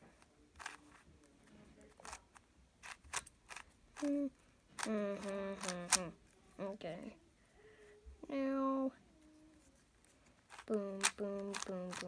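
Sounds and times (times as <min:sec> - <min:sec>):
puzzle cube clicking: 0:00.5 - 0:01.0, 0:01.9 - 0:06.2, 0:10.5 - 0:12.0.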